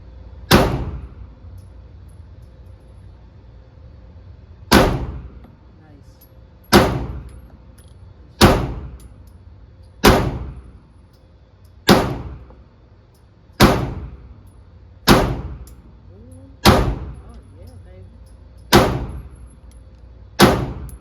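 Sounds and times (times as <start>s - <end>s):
pistol shots with echo: 0.5s - 1.1s, 4.7s - 5.4s, 6.7s - 7.3s, 8.4s - 9.0s, 10.0s - 10.6s, 11.9s - 12.4s, 13.6s - 14.2s, 15.1s - 15.7s, 16.6s - 17.2s, 18.7s - 19.3s, 20.4s - 21.0s.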